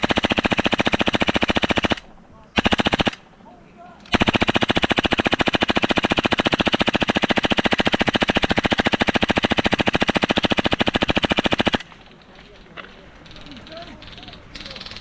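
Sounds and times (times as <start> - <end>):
airsoft gun full-auto burst: 0.0 - 3.2, 4.1 - 12.0.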